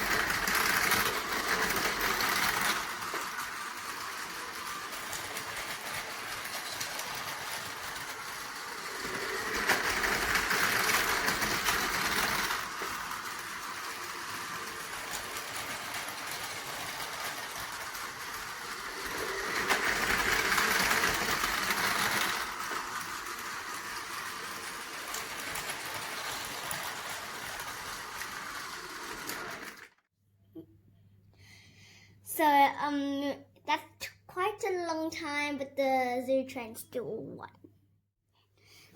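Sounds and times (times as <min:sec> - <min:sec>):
toy train motors whirring: 0:00.0 - 0:30.0.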